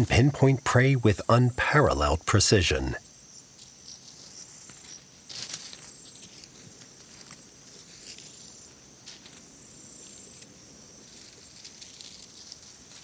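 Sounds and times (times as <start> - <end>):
insects trilling: 0.0 - 13.0.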